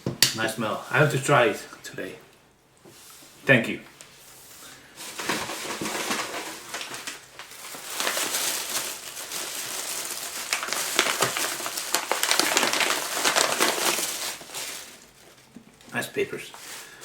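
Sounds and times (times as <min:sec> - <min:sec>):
paper wrapping rustling: 0:04.9 - 0:17.0.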